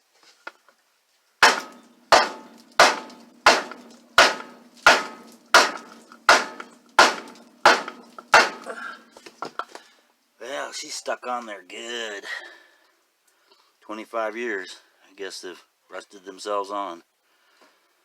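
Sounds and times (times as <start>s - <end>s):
sledgehammer striking metal wheel: 1.4s - 8.7s.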